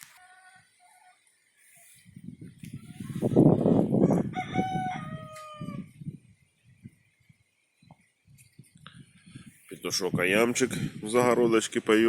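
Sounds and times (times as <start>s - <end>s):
wind buffeting microphone: 2.0s - 11.8s
rooster crowing: 4.0s - 5.9s.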